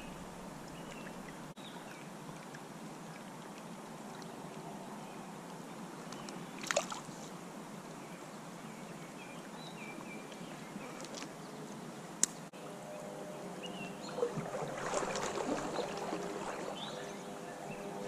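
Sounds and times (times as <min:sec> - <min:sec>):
creek water running: 0:00.0 - 0:12.5, 0:13.8 - 0:18.0
water splash: 0:14.1 - 0:17.1.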